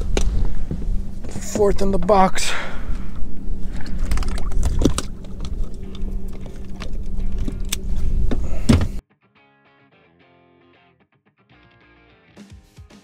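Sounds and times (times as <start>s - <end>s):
constant hum: 0.0s - 9.0s
low rumble: 0.0s - 9.0s.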